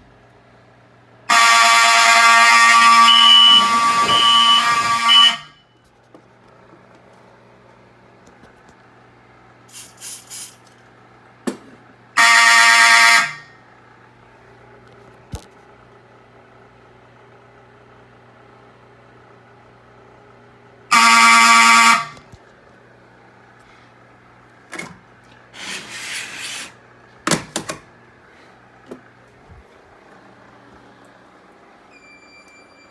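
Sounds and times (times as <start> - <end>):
fire alarm horn blasts: 1.2 - 5.9, 12.1 - 13.7, 20.9 - 22.4, 31.9 - 32.9.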